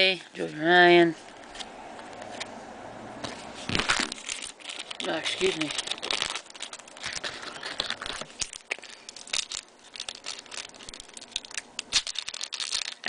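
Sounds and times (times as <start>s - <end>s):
cards being handled and flipped: 1.2s - 2.5s, 3.2s - 13.0s
wrapper crinkling: 3.6s - 13.0s.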